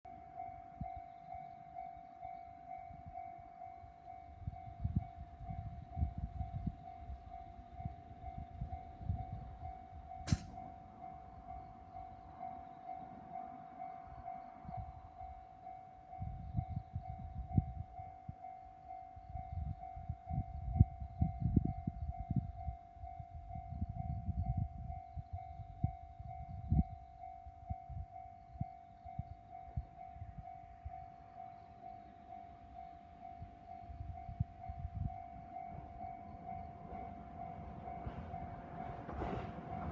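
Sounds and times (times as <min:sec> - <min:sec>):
sharp click: 0:10.3 - 0:10.6.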